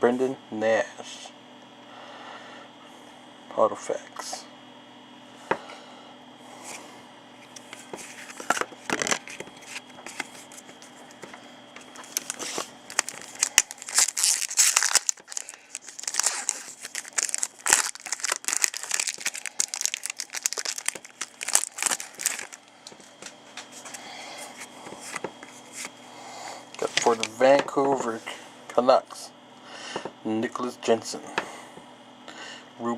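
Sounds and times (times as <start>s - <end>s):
plastic wrapper tearing and crinkling: 8.0s - 10.8s, 11.9s - 23.3s, 26.8s - 27.3s.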